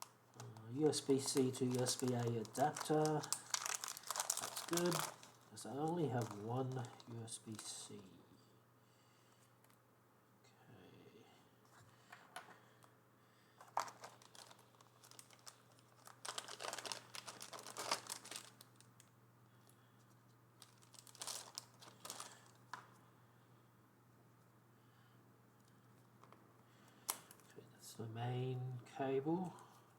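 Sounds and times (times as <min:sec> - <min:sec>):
plastic packaging crinkling: 0:00.0 - 0:07.8, 0:13.6 - 0:19.1, 0:20.6 - 0:22.8.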